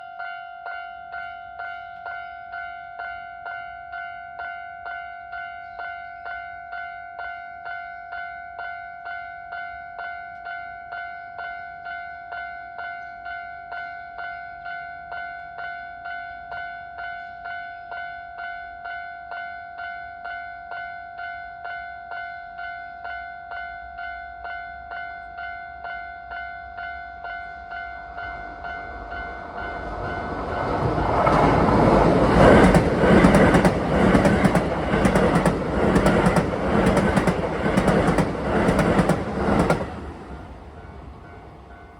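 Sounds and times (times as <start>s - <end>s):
level-crossing warning bell: 0.0s - 41.9s
approaching train rumble: 27.8s - 41.9s.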